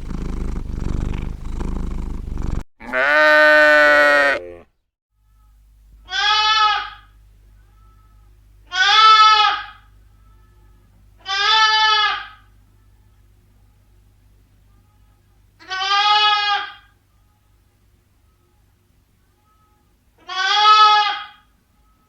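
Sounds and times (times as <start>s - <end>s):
sheep bleating: 2.8s - 4.7s, 15.6s - 16.8s, 20.2s - 21.4s.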